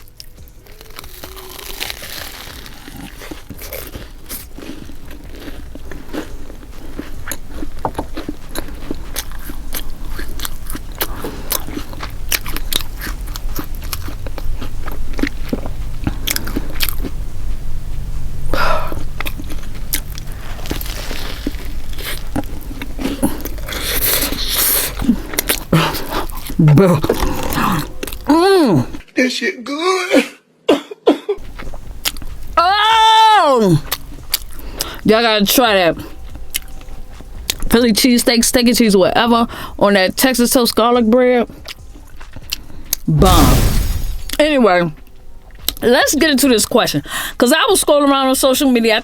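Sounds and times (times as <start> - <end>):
crunching of bread crust: 0.0 - 29.0, 31.4 - 33.0, 33.6 - 35.4, 39.5 - 45.9
wet messy chewing: 0.0 - 29.0, 31.4 - 47.4.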